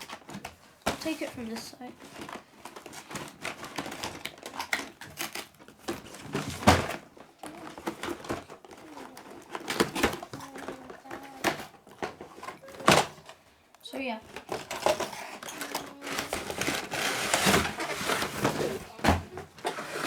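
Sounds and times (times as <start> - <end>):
cardboard box rustling: 14.3 - 20.0.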